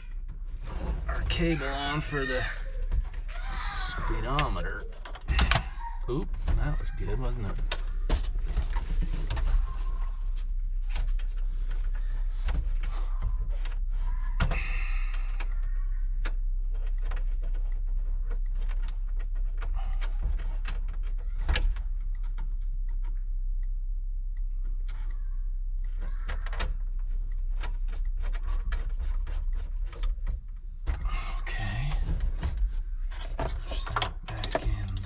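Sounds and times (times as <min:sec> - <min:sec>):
steady low hum: 0:00.0 - 0:35.0
plastic dash parts rattling: 0:25.8 - 0:35.0.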